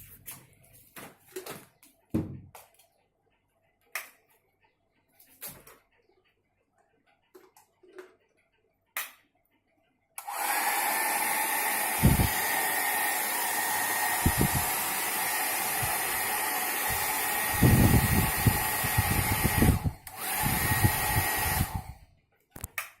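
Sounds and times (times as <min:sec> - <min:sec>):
hair dryer whirring: 0:10.2 - 0:22.0
airflow buffeting microphone: 0:12.0 - 0:12.4, 0:14.2 - 0:14.8, 0:16.8 - 0:21.9.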